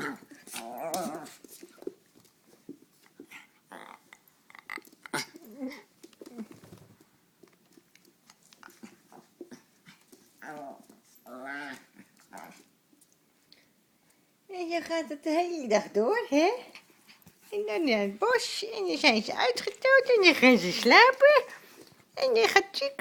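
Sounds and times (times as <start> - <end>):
dogs growling and whining: 0.0 - 1.5, 3.3 - 6.6, 10.3 - 12.7.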